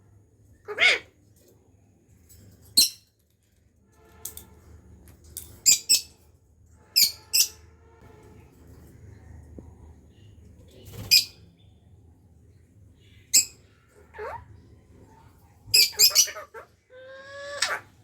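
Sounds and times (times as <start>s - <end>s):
parrot squawking: 0.7s - 1.1s, 13.4s - 14.5s, 15.7s - 18.0s.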